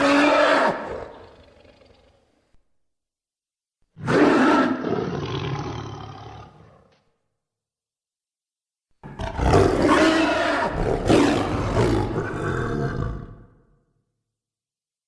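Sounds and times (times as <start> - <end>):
deep creature roar: 0.0 - 2.3, 9.0 - 13.7.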